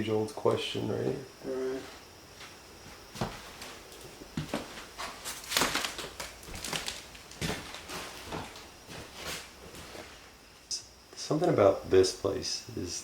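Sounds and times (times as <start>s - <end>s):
footsteps crunching over debris: 2.3s - 10.2s.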